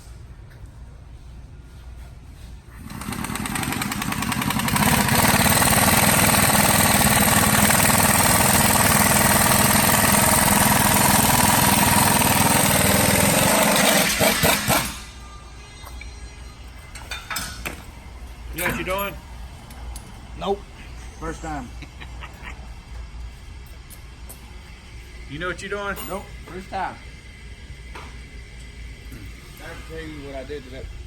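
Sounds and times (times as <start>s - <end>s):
loud motor running: 2.8s - 15.1s.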